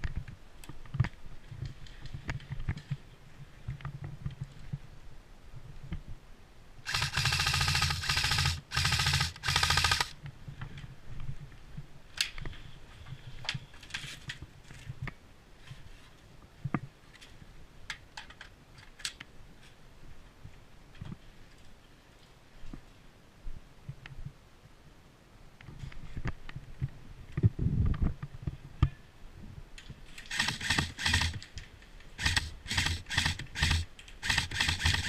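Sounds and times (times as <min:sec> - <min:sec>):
airsoft gun full-auto bursts: 0:06.9 - 0:10.2, 0:30.3 - 0:31.5, 0:32.2 - 0:35.0
sharp clicks and ticks: 0:06.9 - 0:10.2, 0:30.2 - 0:35.0.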